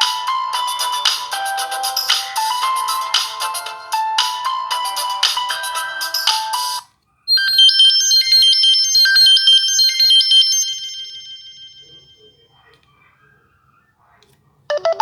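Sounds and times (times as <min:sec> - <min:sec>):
mobile phone ringtone: 0:06.6 - 0:12.5, 0:14.7 - 0:15.0.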